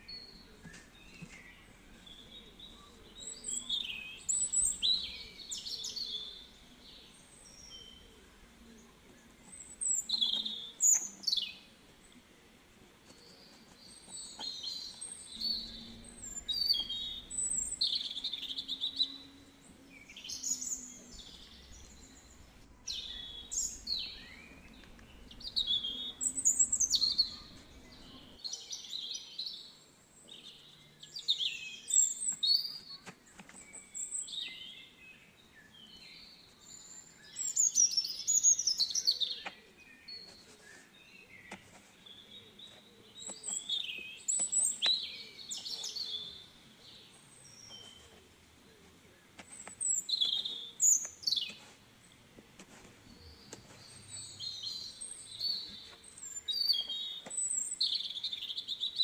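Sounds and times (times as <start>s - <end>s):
songbirds chirping and whistling: 0.0s - 59.0s.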